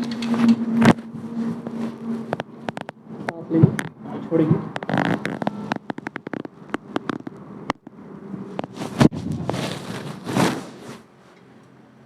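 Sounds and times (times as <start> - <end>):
joints cracking: 1.6 - 4.0, 4.6 - 8.8.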